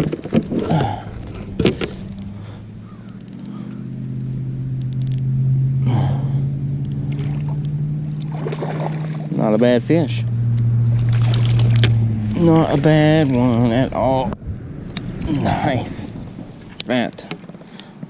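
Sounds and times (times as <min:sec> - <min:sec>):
noisy handling sounds: 0:00.0 - 0:03.6
engine low hum: 0:00.0 - 0:18.0.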